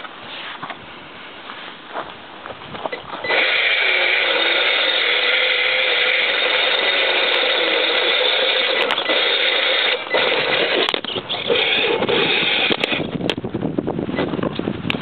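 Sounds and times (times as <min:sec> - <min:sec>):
electric motor and gearbox whining: 0:02.9 - 0:13.4.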